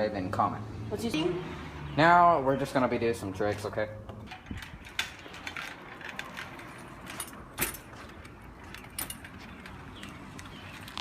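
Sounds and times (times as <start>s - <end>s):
bike metallic clicks and rattles: 3.7s - 11.0s.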